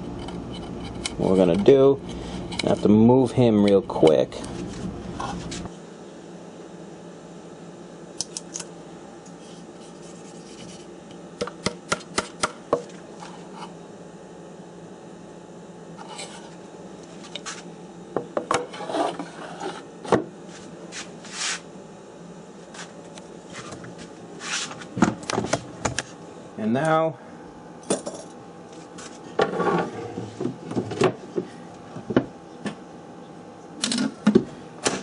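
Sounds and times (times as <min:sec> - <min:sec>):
rubbing and scraping: 0:18.6 - 0:19.9, 0:20.5 - 0:21.6, 0:24.4 - 0:24.9.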